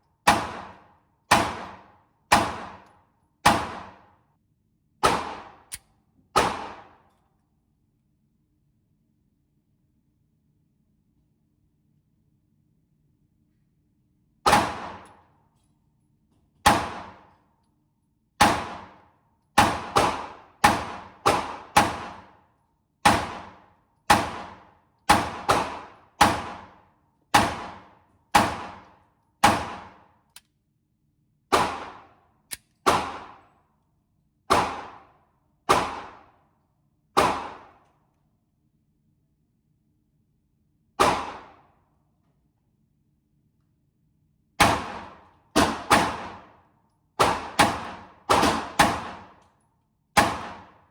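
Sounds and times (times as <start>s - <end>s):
pistol shots with echo: 0.2s - 4.1s, 5.0s - 5.8s, 6.4s - 7.0s, 14.5s - 15.2s, 16.6s - 17.3s, 18.4s - 19.0s, 19.6s - 22.4s, 23.0s - 30.1s, 31.5s - 32.2s, 32.8s - 33.4s, 34.5s - 35.1s, 35.7s - 36.3s, 37.2s - 37.8s, 41.0s - 41.6s, 44.6s - 46.5s, 47.2s - 49.4s, 50.2s - 50.8s.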